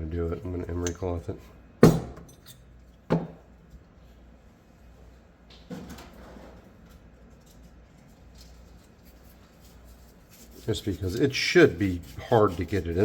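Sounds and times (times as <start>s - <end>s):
soft handling scrape: 8.0s - 13.0s.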